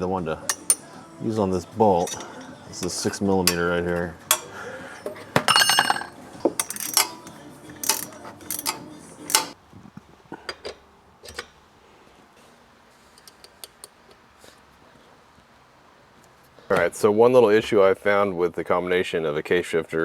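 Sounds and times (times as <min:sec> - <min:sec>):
metal hand tools clinking: 0:00.4 - 0:09.6.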